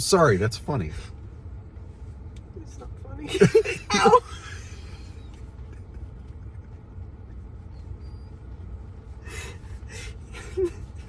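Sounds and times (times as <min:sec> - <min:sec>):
steady low rumble: 0:00.0 - 0:11.0
stifled laughter gasps: 0:09.2 - 0:11.0.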